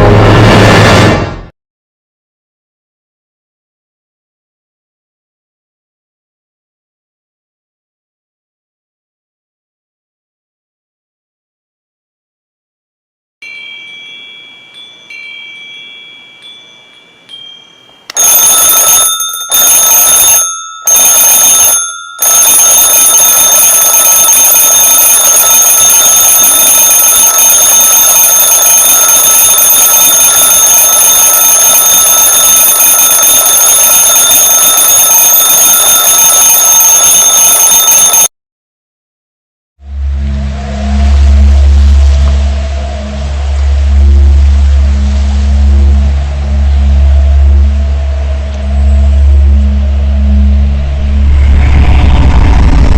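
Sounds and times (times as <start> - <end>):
alarm clock chiming: 13.4 - 38.3
alarm clock ringing: 13.4 - 38.3.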